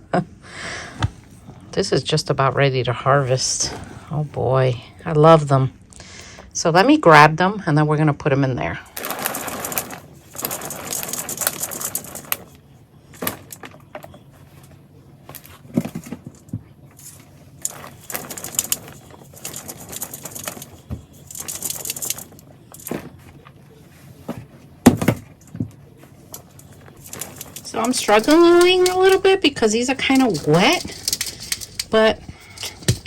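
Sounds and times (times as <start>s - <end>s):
bedding scooped and shaken by hand: 8.9s - 12.3s.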